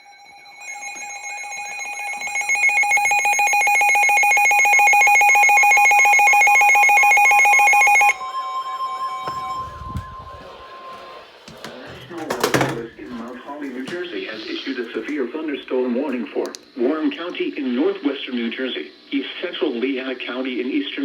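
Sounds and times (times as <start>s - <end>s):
pulsing electronic alarm: 0.0s - 11.4s.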